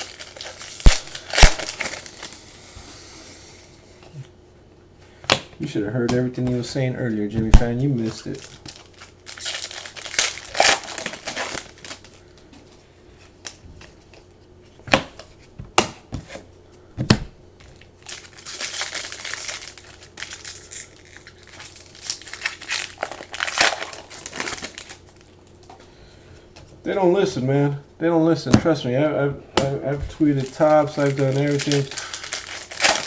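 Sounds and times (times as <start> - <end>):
card pack wrappers crinkling: 0.0 - 2.4, 7.8 - 12.4, 17.7 - 25.7, 30.1 - 33.0.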